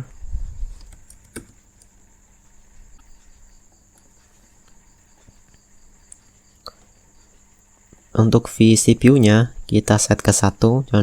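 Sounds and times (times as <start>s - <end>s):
computer mouse clicks: 0.8s - 1.9s.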